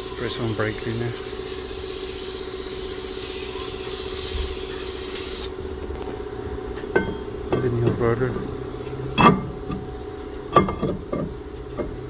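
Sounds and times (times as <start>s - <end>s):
aerosol spray hissing: 0.0s - 5.6s.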